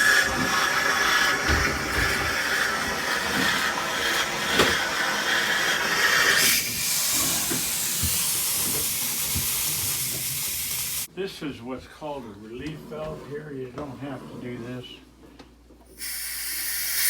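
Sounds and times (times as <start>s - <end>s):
compressed air hissing: 0.0s - 11.1s, 16.0s - 17.0s.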